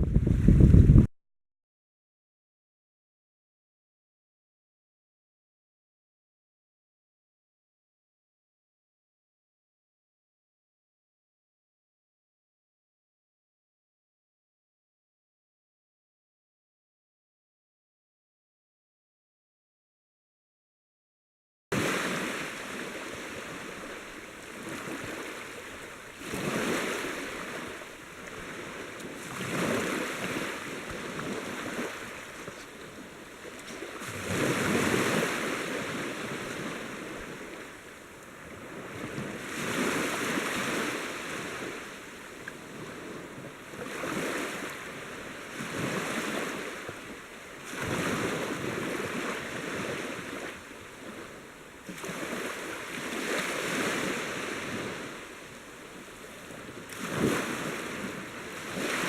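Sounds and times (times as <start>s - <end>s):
sea waves washing in: 21.7s - 59.0s.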